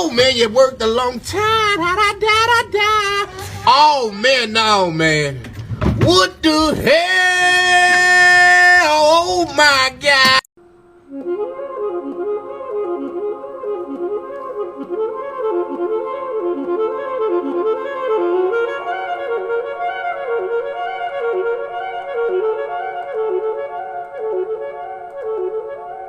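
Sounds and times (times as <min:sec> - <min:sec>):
wind instrument melody: 0:00.0 - 0:04.8, 0:10.6 - 0:26.0.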